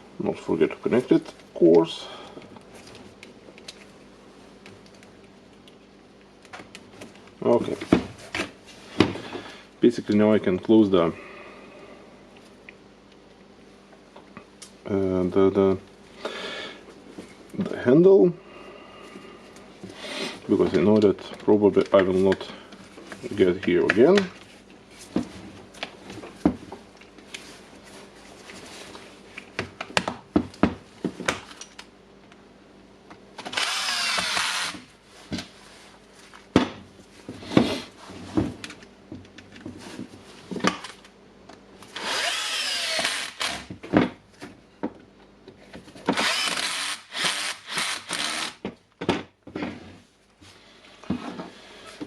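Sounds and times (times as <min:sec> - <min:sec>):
electric screwdriver turning screws: 0:33.5 - 0:34.8, 0:42.0 - 0:43.7, 0:46.1 - 0:48.6.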